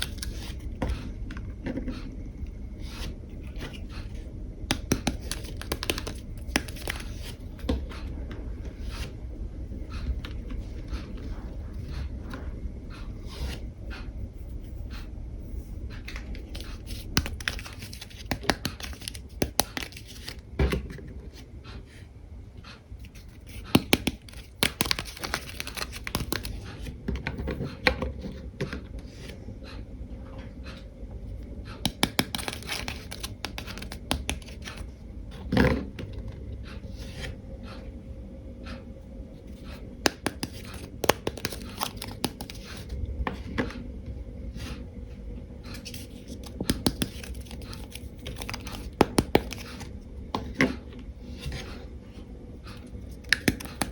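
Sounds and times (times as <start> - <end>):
plastic packaging rustling and tearing: 0.0 - 0.7, 4.9 - 7.6, 16.5 - 20.4, 23.4 - 26.8, 31.9 - 34.8, 40.1 - 43.0, 45.8 - 49.9.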